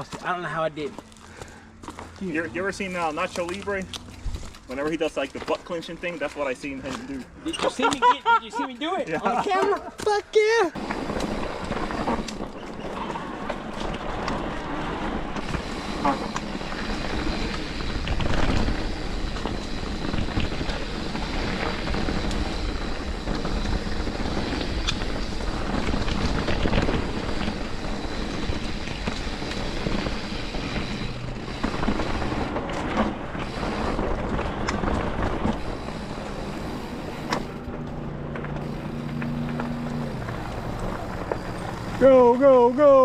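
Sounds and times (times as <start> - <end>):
bike rattling and clicking: 0.0 - 10.2, 10.8 - 43.0
bike tyres rolling on dirt: 0.0 - 43.0
wind on microphone: 10.8 - 37.8.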